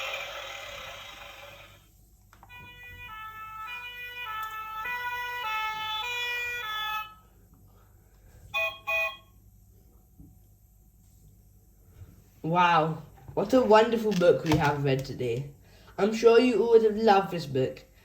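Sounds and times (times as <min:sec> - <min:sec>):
toy car horn beeps: 0:02.5 - 0:07.2, 0:08.5 - 0:09.3.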